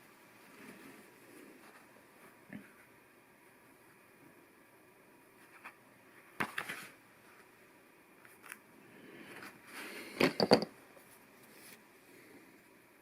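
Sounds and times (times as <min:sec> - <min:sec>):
plastic pieces clattering: 0:10.2 - 0:10.7.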